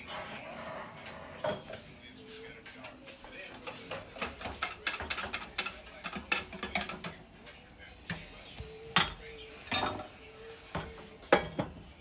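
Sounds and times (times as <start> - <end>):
dishes clicking and tapping: 2.8 - 10.1, 10.7 - 12.0.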